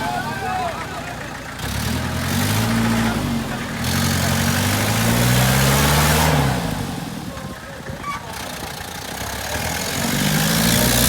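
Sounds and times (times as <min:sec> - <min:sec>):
vehicle engine revving: 0:00.0 - 0:11.0.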